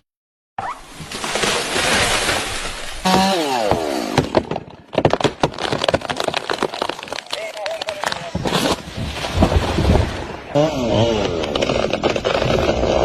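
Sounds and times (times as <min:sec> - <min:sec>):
wood cracking and snapping: 0:01.1 - 0:13.0.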